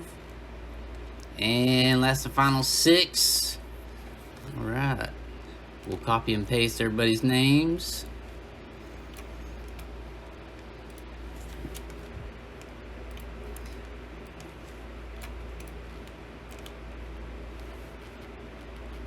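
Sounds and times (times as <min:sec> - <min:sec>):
low electrical hum: 0:00.0 - 0:19.0
computer mouse clicks: 0:08.8 - 0:16.8.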